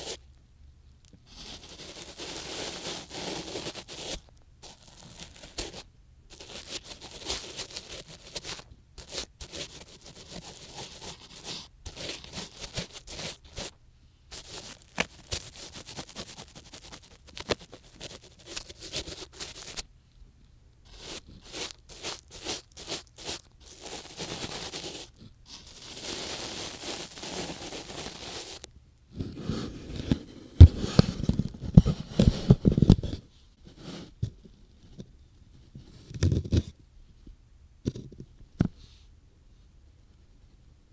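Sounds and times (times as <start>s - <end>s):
bumps and rubbing on microphone: 14.3s - 19.8s, 29.2s - 36.8s
ear pick scratching microphone: 29.4s - 34.3s.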